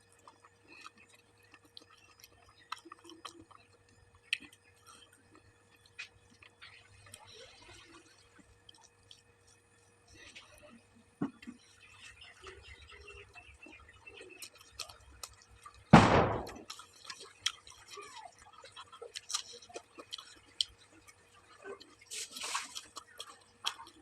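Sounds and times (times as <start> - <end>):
chewing with wet mouth clicks: 0.0 - 10.7, 11.4 - 15.9, 16.6 - 24.0
loud bump: 16.0 - 16.6.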